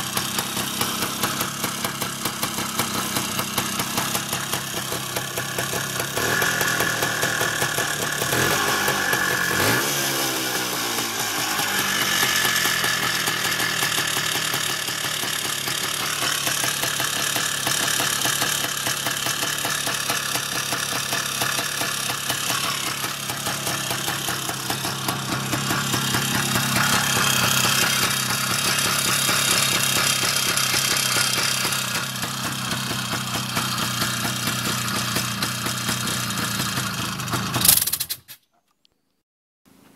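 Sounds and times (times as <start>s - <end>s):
engine knocking: 0.0s - 38.1s
motorcycle two-stroke engine running: 0.0s - 38.2s.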